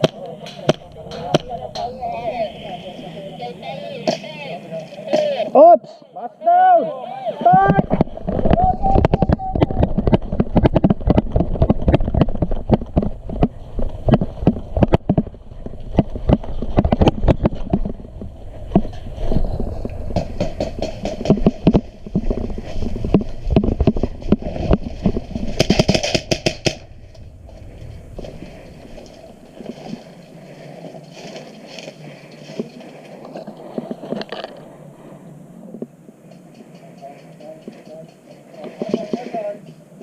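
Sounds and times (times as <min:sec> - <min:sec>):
heavy thumps from movement: 0:07.7 - 0:31.4
gear jostling on microphone: 0:07.7 - 0:34.8.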